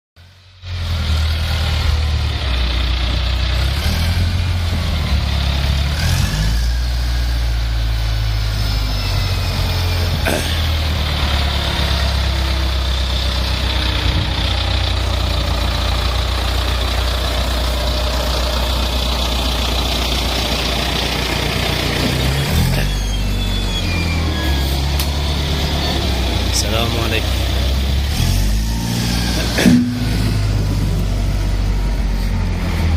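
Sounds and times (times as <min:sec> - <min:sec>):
baler machine humming: 0:29.2 - 0:31.6
sharp knock: 0:29.6 - 0:30.5.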